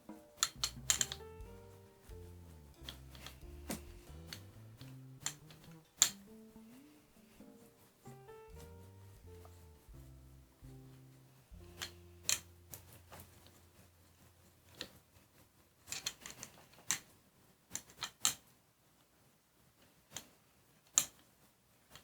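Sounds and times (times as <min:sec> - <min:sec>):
tools clicking and tapping: 0:00.0 - 0:06.4, 0:11.6 - 0:13.6, 0:15.9 - 0:17.1, 0:20.9 - 0:21.2.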